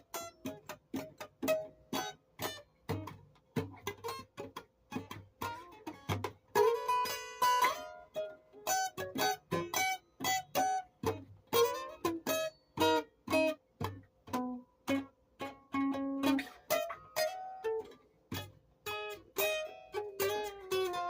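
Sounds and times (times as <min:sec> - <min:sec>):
picked string notes: 0:00.0 - 0:21.0.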